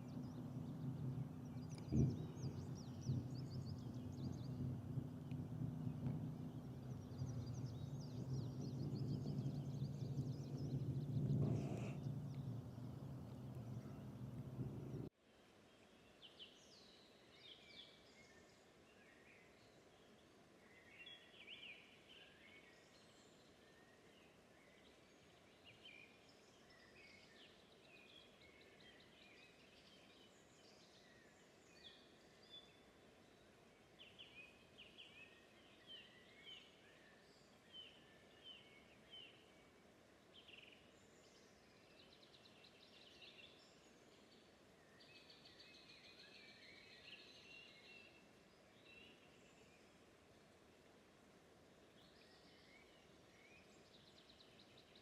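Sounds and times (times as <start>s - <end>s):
birds chirping and trilling: 0.0s - 15.1s
faint outdoor background: 0.0s - 55.0s.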